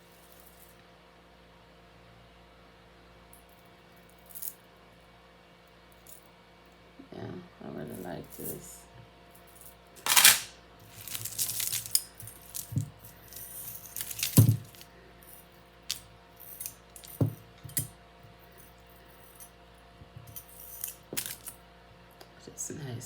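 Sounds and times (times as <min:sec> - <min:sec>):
metal bangles clinking: 0:09.4 - 0:19.6, 0:20.2 - 0:21.6.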